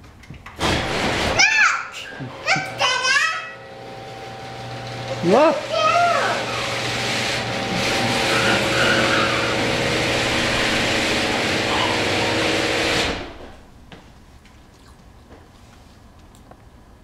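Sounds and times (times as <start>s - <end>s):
garage door opener running: 0.4s - 13.9s.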